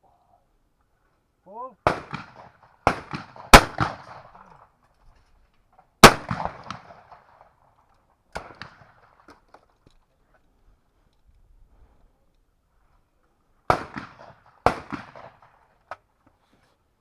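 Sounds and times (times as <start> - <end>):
loud shotgun shots: 1.8 - 4.2, 6.0 - 7.0, 13.7 - 15.4.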